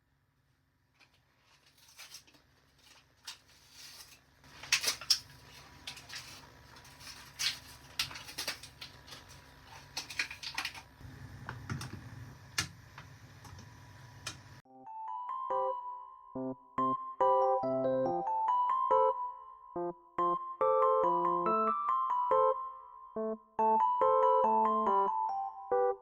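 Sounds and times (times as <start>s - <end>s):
objects clicking and clattering: 1.0s - 11.0s.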